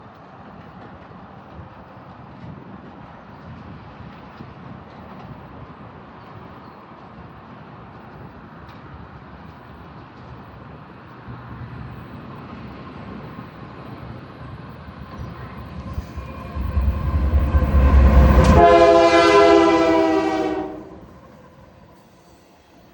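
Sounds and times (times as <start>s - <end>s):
train rumbling: 0.0s - 22.9s.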